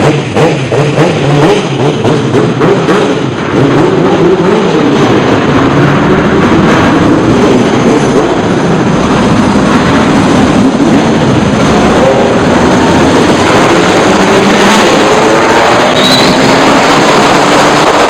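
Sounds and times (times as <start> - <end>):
motorcycle engine running: 0.0 - 15.3
loud steady rushing noise: 0.0 - 18.0.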